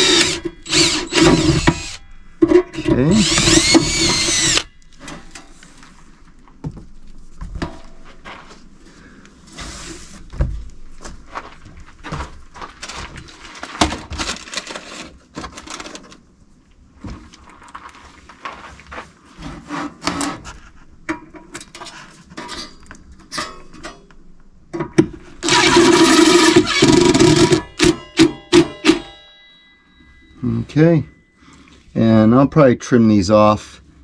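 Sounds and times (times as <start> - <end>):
power drill drilling into steel: 0.0 - 2.0, 2.8 - 4.7, 25.4 - 28.0.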